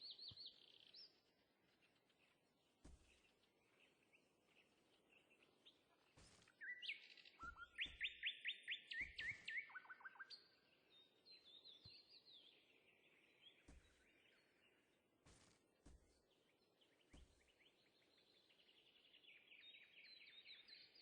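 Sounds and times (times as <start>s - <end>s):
bird chirping: 0.0s - 2.4s, 3.0s - 14.9s, 16.1s - 21.0s.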